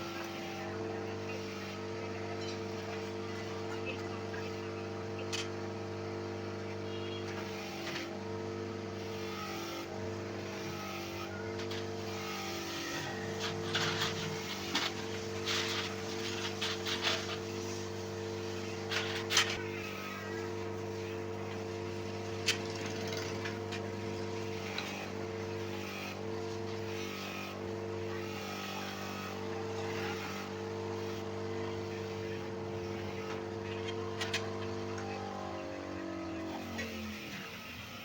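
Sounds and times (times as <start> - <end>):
machine humming: 0.0 - 38.0.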